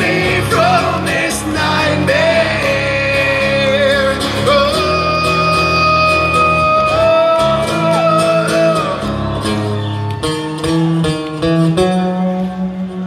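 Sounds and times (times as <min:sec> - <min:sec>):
live rock band music: 0:00.0 - 0:13.0
picked guitar notes: 0:00.0 - 0:13.0.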